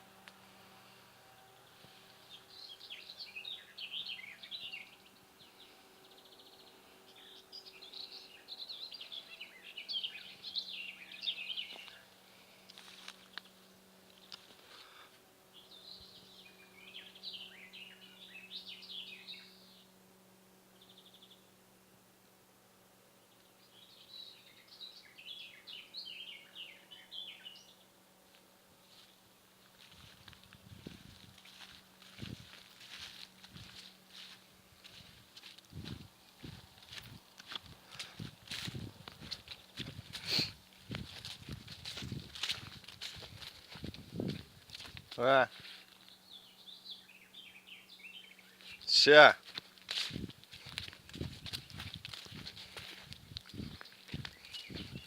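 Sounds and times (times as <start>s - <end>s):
songbird chirping: 0.0s - 22.0s, 23.1s - 55.0s
faint low hum: 0.0s - 55.0s
songbird twittering: 2.2s - 12.1s, 15.5s - 20.0s, 23.3s - 27.9s, 46.0s - 49.3s, 52.9s - 55.0s.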